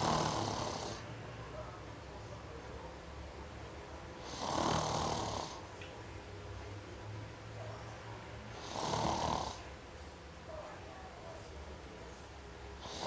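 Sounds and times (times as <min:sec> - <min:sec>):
person snoring heavily: 0:00.0 - 0:01.0, 0:04.3 - 0:05.6, 0:08.6 - 0:09.6.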